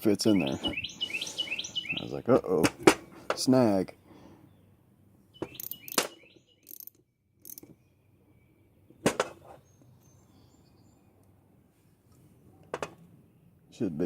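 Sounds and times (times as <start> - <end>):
metallic tool clicks and taps: 5.5 - 7.7.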